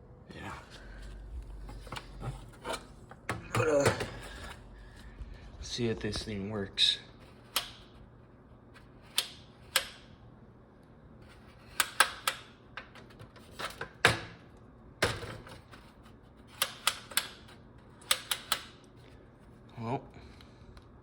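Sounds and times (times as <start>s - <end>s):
fan switch clicking: 7.5s - 7.9s, 9.1s - 10.1s, 11.8s - 12.8s, 16.6s - 17.4s, 18.0s - 18.8s.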